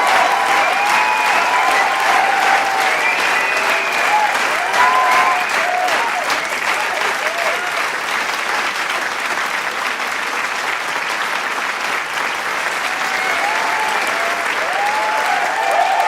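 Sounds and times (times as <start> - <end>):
crowd shouting and cheering: 0.0 - 8.0, 12.7 - 16.0
crowd applauding: 0.0 - 16.0.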